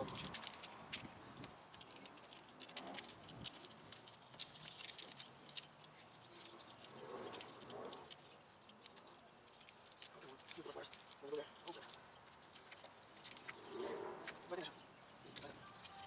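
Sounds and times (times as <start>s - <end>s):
clicks and rustling of wiring: 0.0s - 13.6s, 14.2s - 16.0s.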